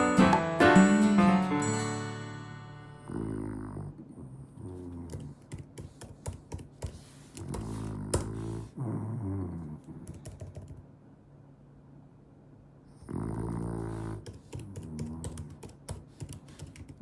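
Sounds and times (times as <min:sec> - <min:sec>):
dog snoring and grunting: 0:03.1 - 0:05.4, 0:07.7 - 0:10.0, 0:13.0 - 0:15.4.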